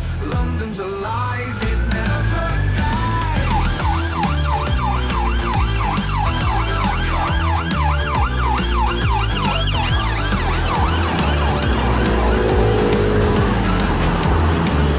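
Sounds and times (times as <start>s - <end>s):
background music with steady beat: 0.0s - 14.9s
police siren yelping: 3.2s - 14.9s.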